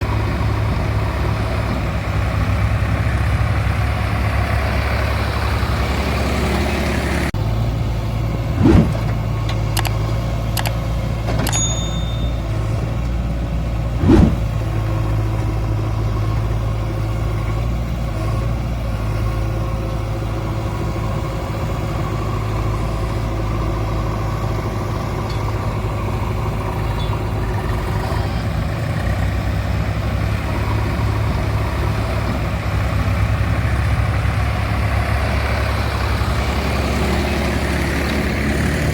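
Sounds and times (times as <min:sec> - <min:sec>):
diesel engine running: 0:00.0 - 0:38.9
loud thumps: 0:08.5 - 0:09.2, 0:14.0 - 0:14.6.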